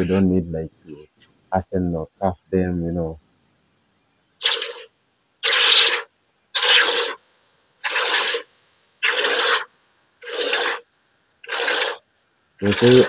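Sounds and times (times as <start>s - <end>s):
milk squirting into a can: 4.4s - 6.0s.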